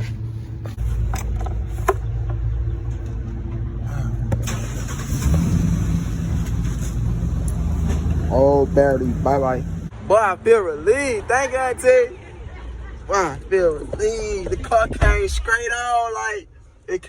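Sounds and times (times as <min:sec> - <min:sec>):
car engine starting and running: 0:00.8 - 0:09.9.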